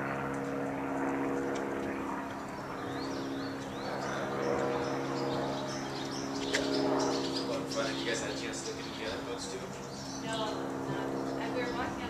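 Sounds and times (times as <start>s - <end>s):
engine drone: 0.0s - 12.0s
high rising bird chirps: 2.5s - 9.2s.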